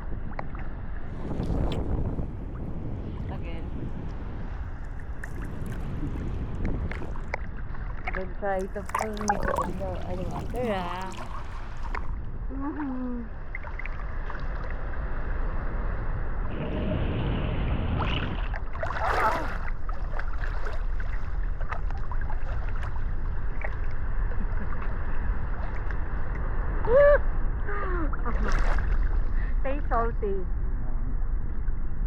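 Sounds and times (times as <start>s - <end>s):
ocean surf washing: 0.0s - 12.5s
wind rumble on microphone: 0.0s - 32.0s.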